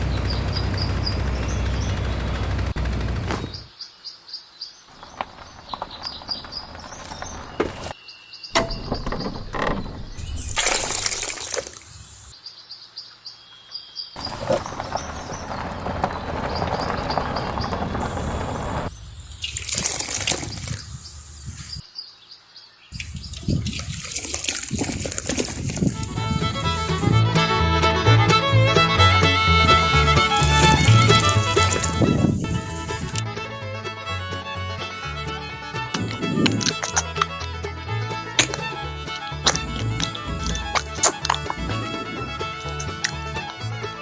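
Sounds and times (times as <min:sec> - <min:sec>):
birds chirping: 0:00.0 - 0:44.0
sharp knocks: 0:08.6 - 0:11.4
water splashing and pouring: 0:10.3 - 0:11.9, 0:14.2 - 0:16.8, 0:19.6 - 0:20.8, 0:23.7 - 0:26.0.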